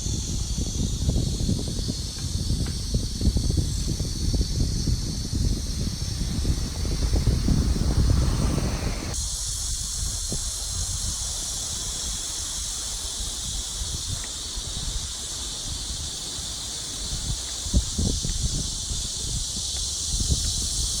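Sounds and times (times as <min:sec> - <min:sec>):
insect chorus shrill hiss: 0:00.0 - 0:21.0
wind rumble on microphone: 0:00.0 - 0:21.0.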